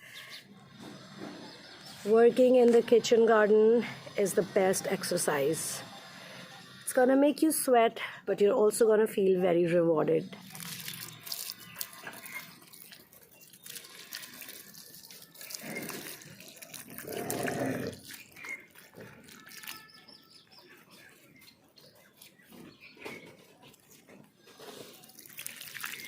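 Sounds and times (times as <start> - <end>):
water splashing and dripping: 10.4 - 20.2, 24.9 - 26.0.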